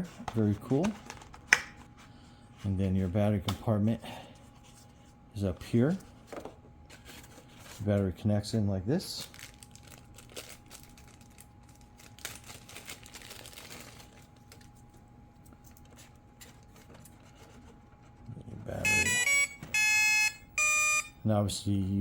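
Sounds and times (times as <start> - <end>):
loud electronic beep: 18.8 - 21.2.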